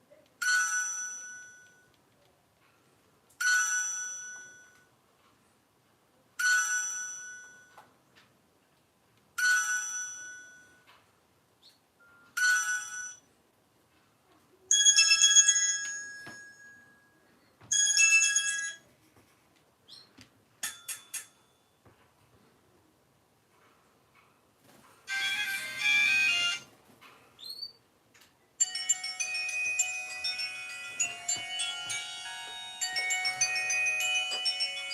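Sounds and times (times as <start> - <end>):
mobile phone ringtone: 12.0 - 13.2, 14.7 - 16.9, 17.7 - 18.8, 25.1 - 26.7, 28.6 - 34.9.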